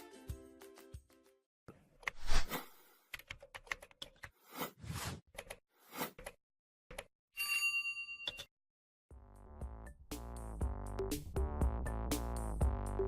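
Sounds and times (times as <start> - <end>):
short swishes: 2.2 - 2.7
bell-like chime: 7.4 - 8.5.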